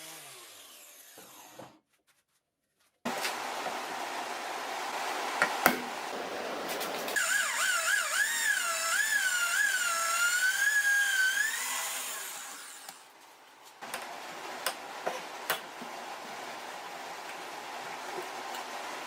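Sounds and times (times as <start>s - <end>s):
power tool motor whining: 7.2s - 13.0s.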